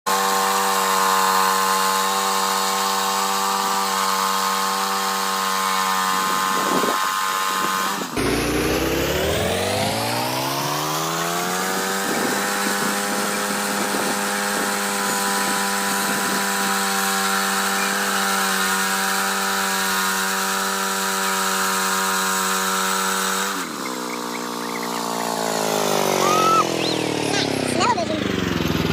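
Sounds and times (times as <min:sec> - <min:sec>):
band blade sawing through log: 0:00.1 - 0:26.6
gas engine running: 0:00.1 - 0:28.9.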